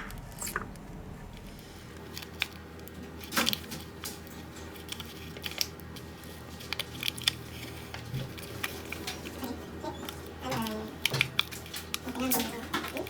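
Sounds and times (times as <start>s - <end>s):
steady low hum: 0.0s - 5.0s.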